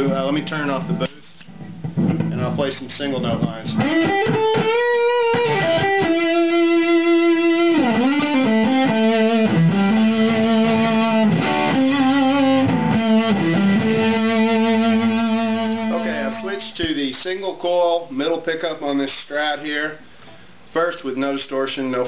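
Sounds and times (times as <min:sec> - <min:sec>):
fuzz electric guitar notes: 0:00.0 - 0:16.8.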